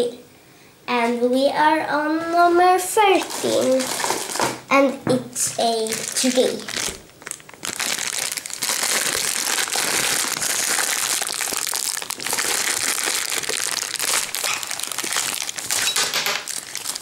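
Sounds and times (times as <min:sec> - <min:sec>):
packaging crinkling and rustling: 0:03.1 - 0:04.7, 0:05.7 - 0:17.0.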